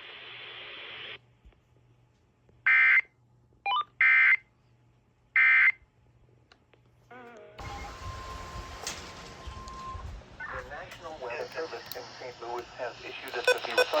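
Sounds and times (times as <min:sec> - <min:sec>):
radio hiss: 0:00.0 - 0:01.2, 0:10.4 - 0:14.0
buzzy digital data bursts: 0:13.4 - 0:14.0.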